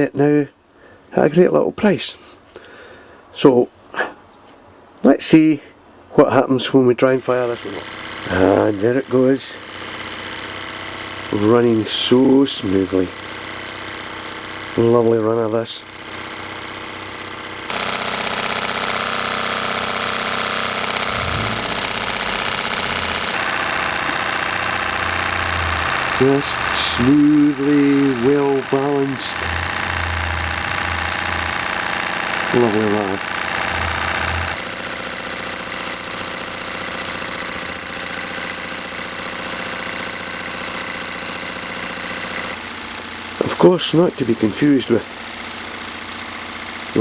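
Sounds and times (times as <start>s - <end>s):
toy steam engine running: 7.0s - 47.0s.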